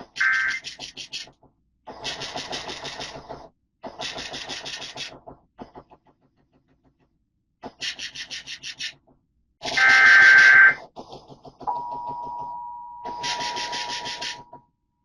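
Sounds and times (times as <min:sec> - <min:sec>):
rapid pulsing bursts: 0:00.0 - 0:06.4, 0:07.6 - 0:09.0, 0:13.1 - 0:14.6
digital header data burst: 0:00.2 - 0:00.7, 0:09.7 - 0:10.8, 0:13.1 - 0:14.5
two-tone attention signal: 0:11.7 - 0:14.5.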